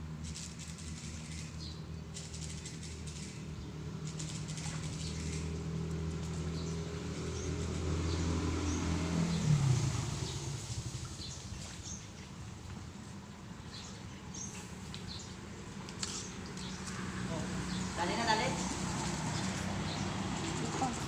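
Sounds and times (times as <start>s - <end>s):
motor engine passing by: 0.2s - 12.2s, 16.0s - 21.0s
birds chirping: 0.8s - 21.0s.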